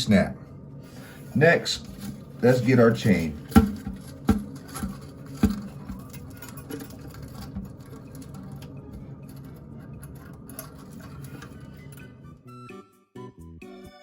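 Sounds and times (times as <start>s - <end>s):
clicks and taps of toilet parts: 3.4s - 7.8s.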